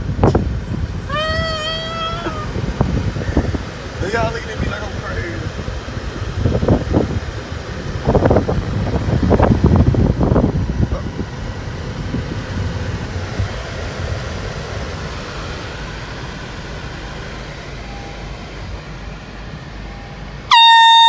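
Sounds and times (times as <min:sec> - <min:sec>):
traffic: 0:00.0 - 0:21.0
wind: 0:00.0 - 0:21.0
air horn blast: 0:20.5 - 0:21.0.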